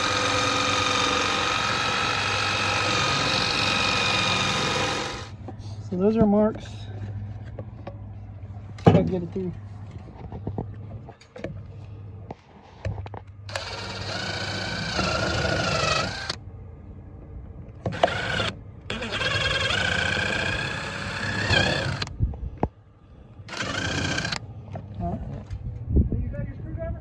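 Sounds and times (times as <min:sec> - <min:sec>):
cordless drill whining: 0:00.0 - 0:05.3, 0:13.5 - 0:16.4, 0:17.9 - 0:22.1, 0:23.5 - 0:24.4.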